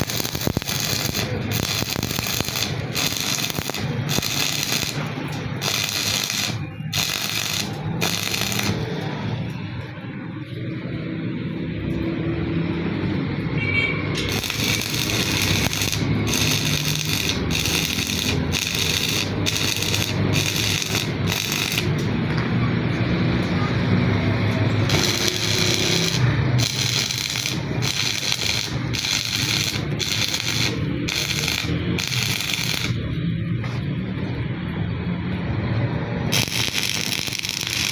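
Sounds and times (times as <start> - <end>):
welding arc crackling: 0.0 - 9.1, 14.2 - 22.1, 24.3 - 33.8, 36.3 - 37.9.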